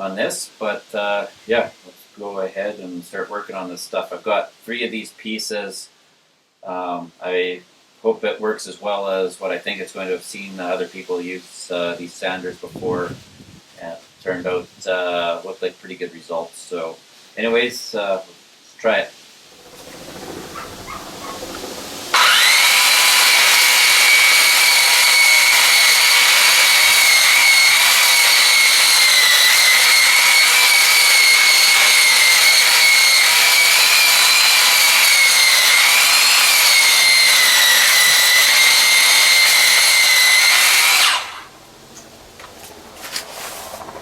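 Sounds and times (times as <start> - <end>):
drum sander on log: 19.5 - 41.5.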